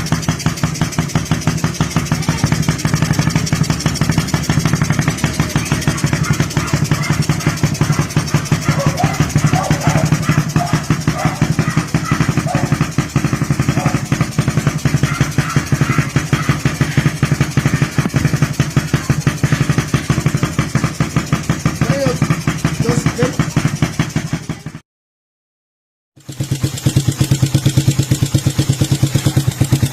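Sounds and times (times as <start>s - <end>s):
motorcycle engine idling: 0.0s - 24.8s, 26.2s - 29.9s.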